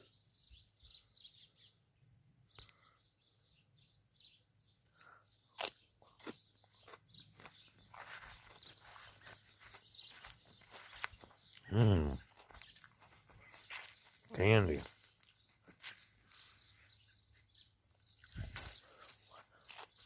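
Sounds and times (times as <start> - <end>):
small birds chirping faintly: 0.0 - 20.0
sharp snaps or crunches: 5.5 - 8.2, 18.1 - 20.0.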